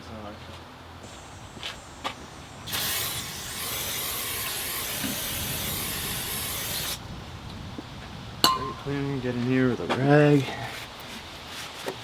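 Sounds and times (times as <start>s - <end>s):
aerosol can spraying hiss: 2.3s - 7.0s.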